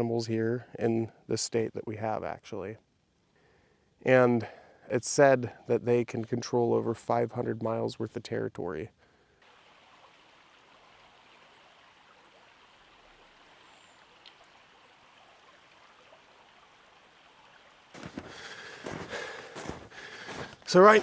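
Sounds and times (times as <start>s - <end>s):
flowing stream water: 9.4s - 21.0s
irregular rustling: 18.0s - 21.0s.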